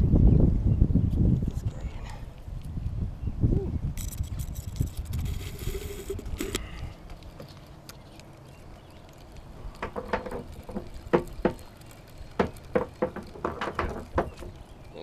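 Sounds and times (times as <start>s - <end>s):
light knocks and taps: 9.8s - 11.7s, 12.4s - 14.6s.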